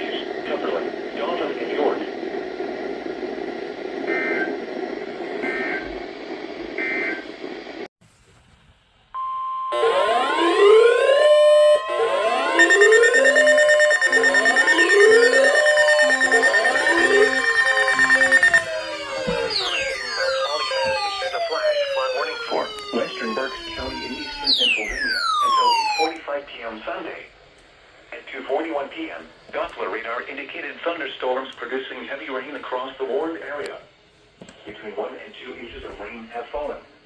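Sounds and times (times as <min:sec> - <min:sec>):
radio static: 0:00.0 - 0:07.9, 0:11.8 - 0:27.4
electronic siren wails: 0:04.1 - 0:04.5, 0:05.3 - 0:06.0, 0:06.8 - 0:07.3, 0:09.7 - 0:26.2
alarm tones: 0:09.2 - 0:26.2
steady attention tone: 0:09.2 - 0:26.2
two-tone warbling data bursts: 0:09.8 - 0:26.2.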